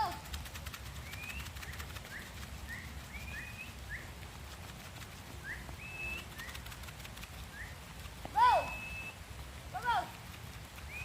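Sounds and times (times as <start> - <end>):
low steady rumble: 0.0 - 11.0
bird chirping and whistling: 1.0 - 4.1, 5.4 - 6.6, 7.5 - 7.8, 8.6 - 9.2.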